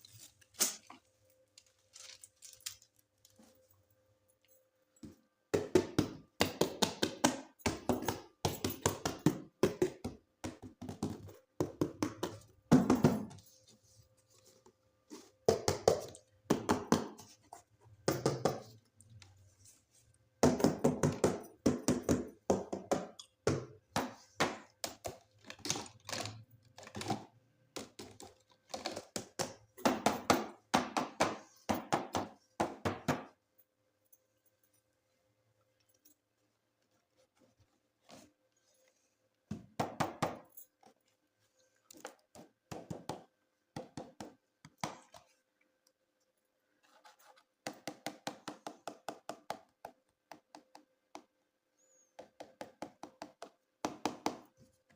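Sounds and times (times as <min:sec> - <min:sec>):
hands handling plastic toys: 0:00.0 - 0:03.6.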